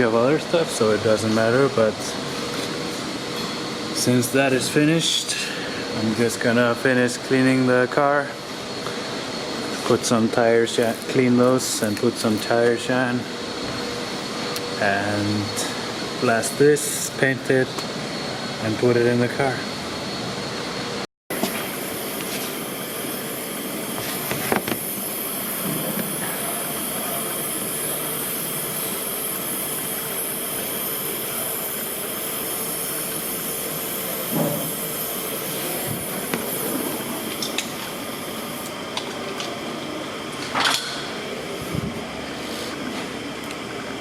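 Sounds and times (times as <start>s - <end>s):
steady hissing: 21.5s - 38.7s.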